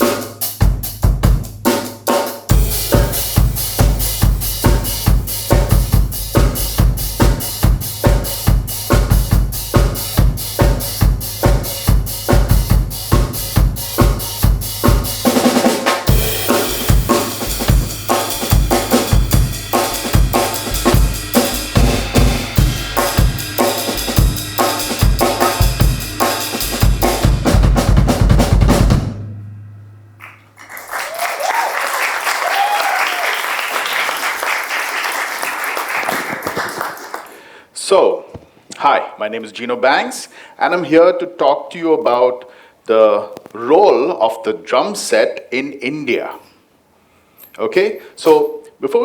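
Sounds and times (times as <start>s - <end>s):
drum kit groove: 0.0s - 29.4s
cymbal wash: 2.5s - 12.4s, 16.1s - 27.4s.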